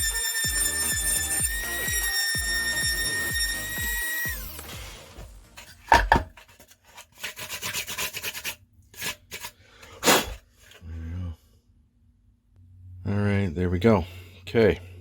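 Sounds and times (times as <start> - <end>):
electronic background music: 0.0 - 5.6.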